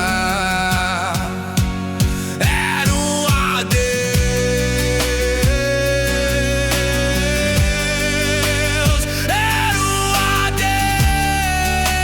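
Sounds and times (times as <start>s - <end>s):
instrumental pop ballad music: 0.0s - 12.0s.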